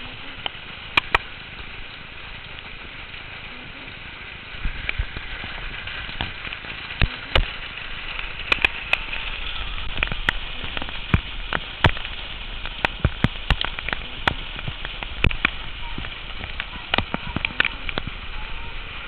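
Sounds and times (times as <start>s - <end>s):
hailstones cracking on hard surface: 0.0s - 19.0s
hiss of falling hail and rain: 0.0s - 19.0s.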